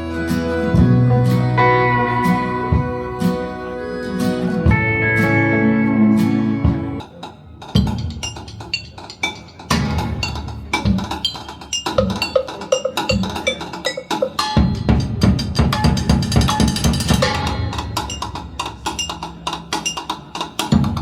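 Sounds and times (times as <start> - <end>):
drums with deep bass: 0.0 - 21.0
percussion music over loudspeakers: 6.2 - 21.0.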